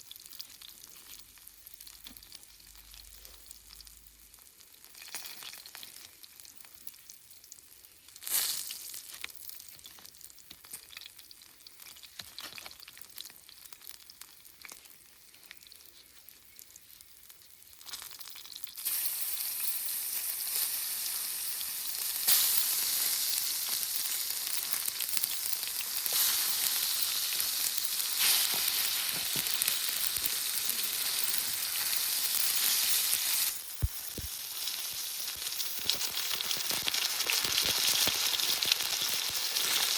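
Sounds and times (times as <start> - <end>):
food sizzling in a pan: 0.0 - 39.9.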